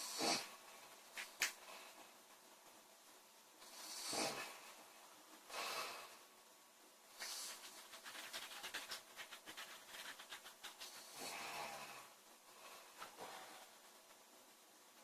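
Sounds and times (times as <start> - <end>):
noisy breathing: 0.0 - 1.0, 3.6 - 6.4, 10.8 - 14.1
woman snoring: 3.8 - 4.6.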